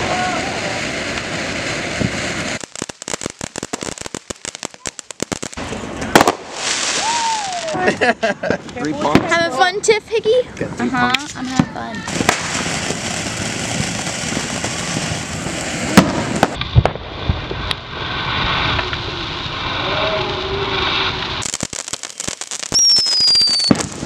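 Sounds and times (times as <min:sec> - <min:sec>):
firework bangs: 0:00.0 - 0:09.6, 0:11.0 - 0:24.0
fireworks hissing and crackling: 0:00.0 - 0:24.0
crackling pops: 0:02.0 - 0:07.2, 0:10.6 - 0:15.1, 0:15.8 - 0:19.1
firework whistle: 0:06.1 - 0:07.8, 0:22.7 - 0:24.0.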